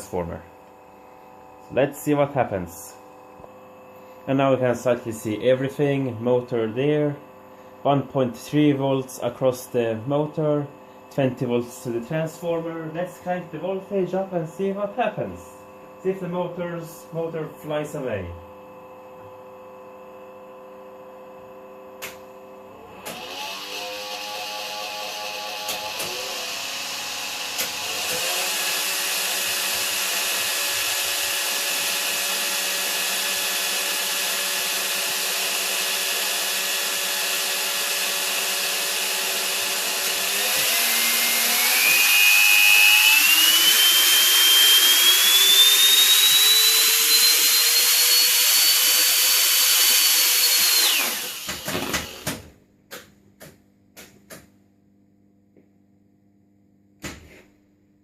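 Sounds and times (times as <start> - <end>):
vacuum motor whining: 22.0 - 52.5.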